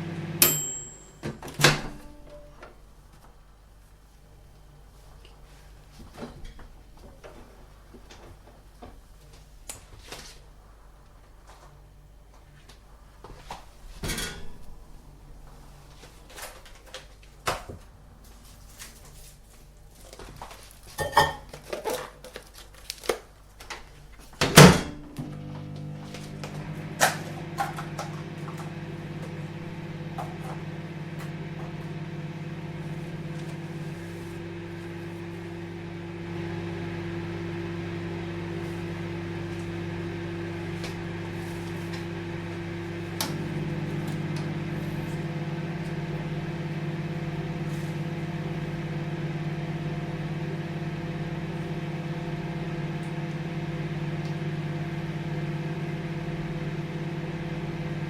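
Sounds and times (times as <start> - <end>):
microwave oven humming: 0.0 - 8.2, 24.4 - 58.0.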